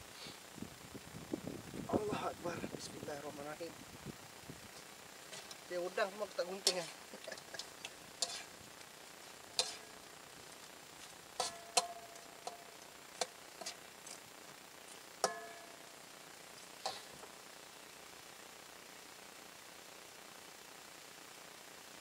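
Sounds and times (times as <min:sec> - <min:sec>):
faint steady hiss: 0:00.0 - 0:22.0
metal utensil clinking on cookware: 0:09.6 - 0:09.9.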